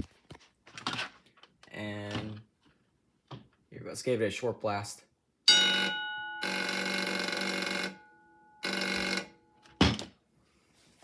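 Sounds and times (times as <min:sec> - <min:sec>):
fire alarm bell ringing and buzzing: 0:05.5 - 0:09.8.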